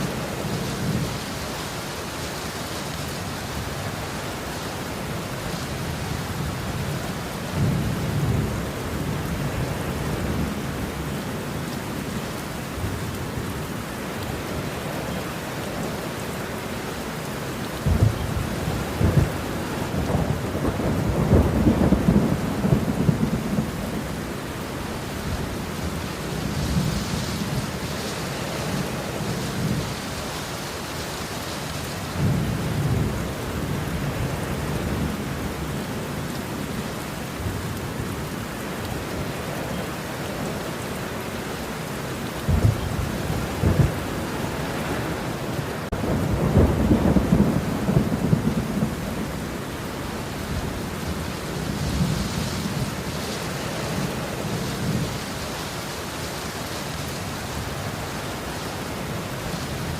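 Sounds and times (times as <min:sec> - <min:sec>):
steady rain: 0:00.0 - 0:59.9
thunder rumbling: 0:17.8 - 0:30.2, 0:42.4 - 0:55.2
sharp thunder claps: 0:43.6 - 0:44.0.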